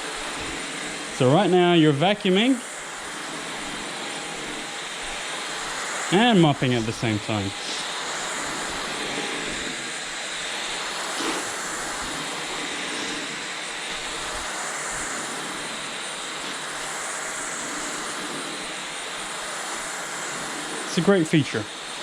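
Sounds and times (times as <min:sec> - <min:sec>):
stick vacuum running: 0:00.0 - 0:22.0.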